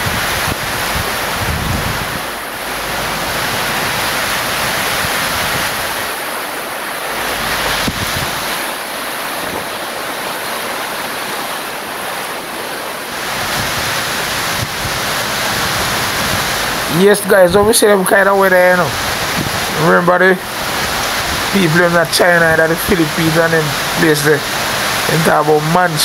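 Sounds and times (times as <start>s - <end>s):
wind buffeting microphone: 0.0s - 6.2s, 7.1s - 9.9s, 13.2s - 17.9s, 18.5s - 21.7s
heavy rain hissing: 0.0s - 26.0s.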